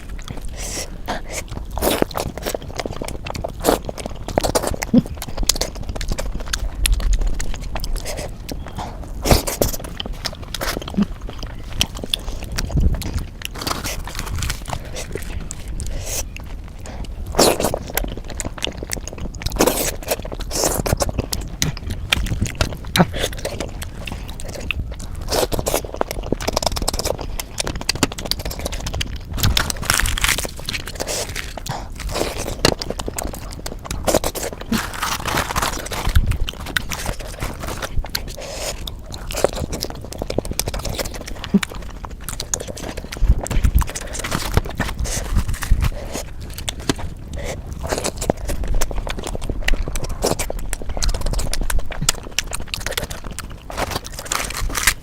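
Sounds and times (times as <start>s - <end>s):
biting and chewing food: 0.0s - 55.0s
mouth clicks: 0.2s - 14.1s.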